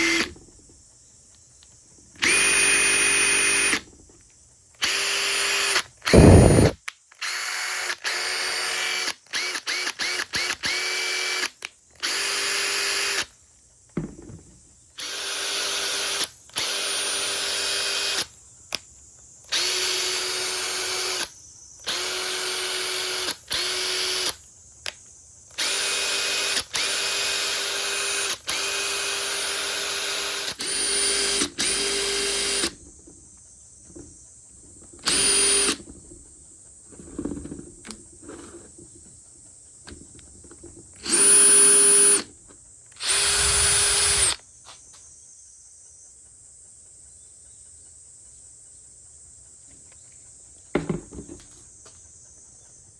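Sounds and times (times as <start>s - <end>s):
impact driver motor whining: 0.0s - 0.6s, 2.2s - 4.0s, 4.8s - 13.3s, 15.0s - 18.3s, 19.5s - 21.3s, 21.9s - 24.4s, 25.6s - 32.8s, 35.0s - 35.8s, 41.0s - 42.3s, 43.0s - 44.4s.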